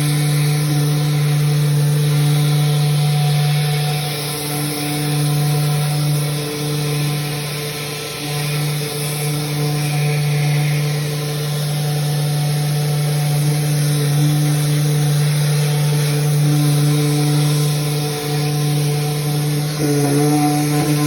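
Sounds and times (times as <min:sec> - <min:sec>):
electric sander humming: 0:00.0 - 0:21.0.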